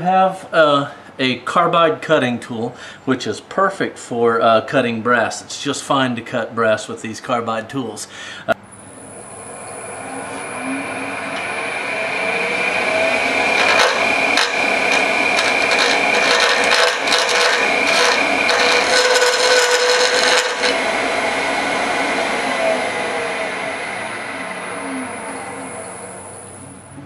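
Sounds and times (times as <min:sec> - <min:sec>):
lathe cutting tool scraping metal: 0:09.2 - 0:27.0.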